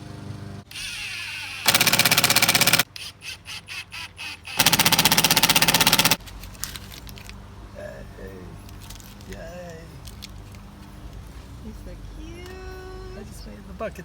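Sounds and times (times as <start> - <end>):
impact driver hammering screw into wood: 0.7 - 6.2.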